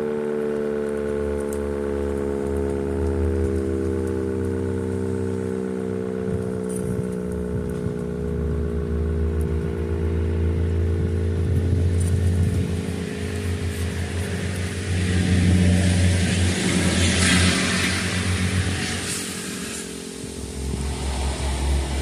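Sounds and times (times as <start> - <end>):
low rumble: 9.2 - 22.0.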